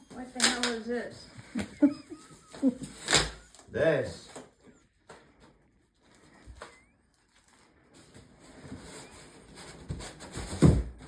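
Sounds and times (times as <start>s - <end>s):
cardboard packaging rustling: 5.1s - 11.0s.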